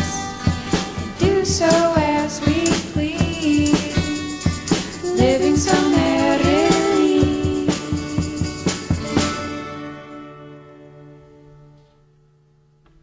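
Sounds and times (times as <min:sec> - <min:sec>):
pop song with woman singing: 0:01.2 - 0:08.7.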